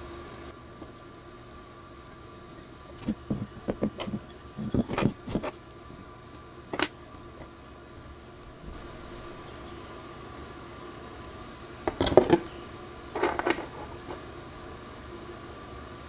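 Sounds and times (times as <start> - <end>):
steady hum: 0.0 - 16.0
small parts clicking and knocking: 2.4 - 8.1, 11.9 - 14.2.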